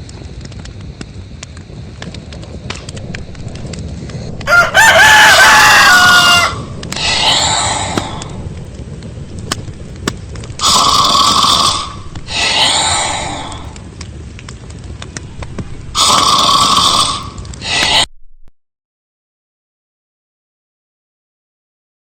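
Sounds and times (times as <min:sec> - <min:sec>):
cartoon snoring: 0:06.9 - 0:08.4, 0:10.6 - 0:13.8, 0:15.9 - 0:18.1.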